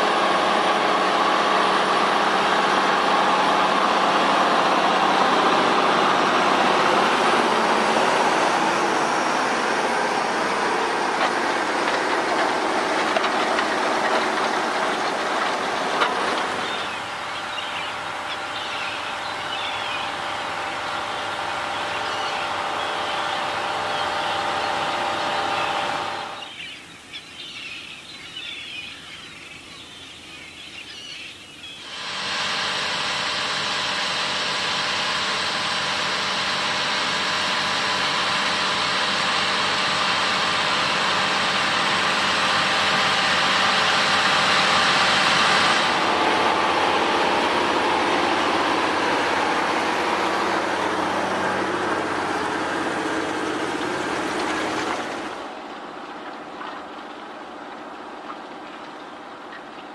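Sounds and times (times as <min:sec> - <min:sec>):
farm machinery running loudly: 0:00.0 - 0:26.8, 0:30.7 - 0:59.9
birds chirping: 0:04.2 - 0:31.9.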